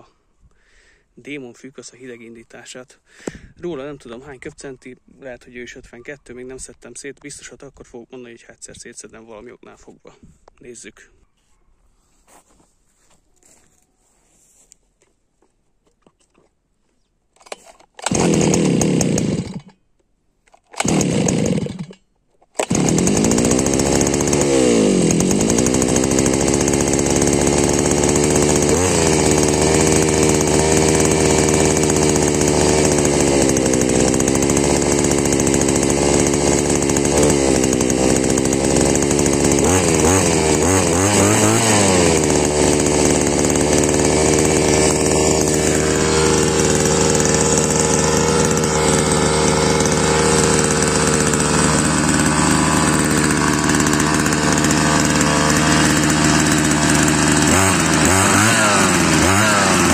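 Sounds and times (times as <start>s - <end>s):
two-stroke brush cutter engine: 17.4s - 19.8s, 20.5s - 59.9s.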